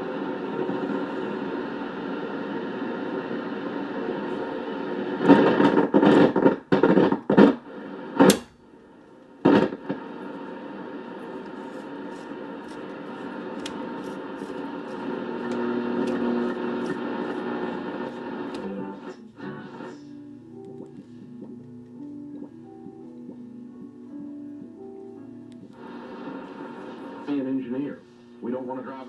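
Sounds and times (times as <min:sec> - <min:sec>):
radio static and hiss: 0:00.0 - 0:21.4, 0:25.7 - 0:29.0
loud crackling bursts: 0:04.9 - 0:18.7
sharp clicks: 0:08.2 - 0:08.6.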